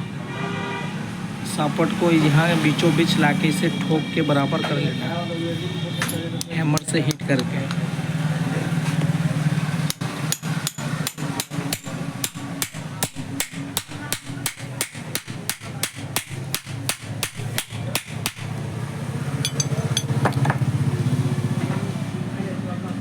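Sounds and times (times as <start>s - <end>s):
hammer tapping metal shaft: 6.0s - 7.9s, 9.8s - 18.6s, 19.4s - 20.6s.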